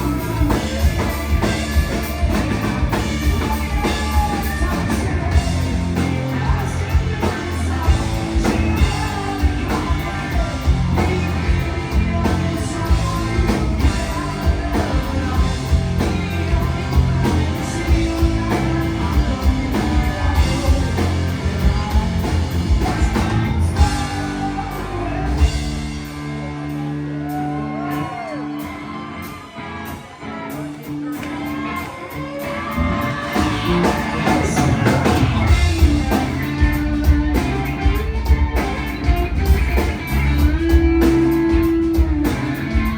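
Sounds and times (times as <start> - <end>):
bass guitar: 0.0 - 42.9
drum kit: 0.0 - 42.9
electric guitars: 0.0 - 42.9
lead vocals singing: 0.0 - 42.9.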